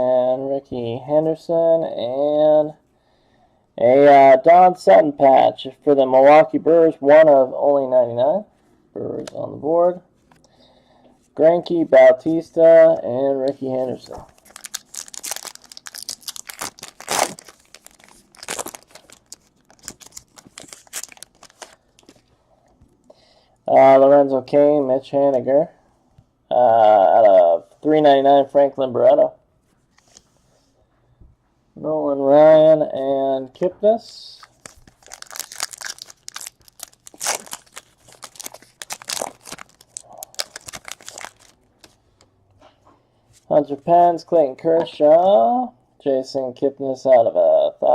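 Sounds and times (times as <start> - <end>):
card pack wrappers crinkling and tearing: 13.9 - 22.3, 34.4 - 42.0.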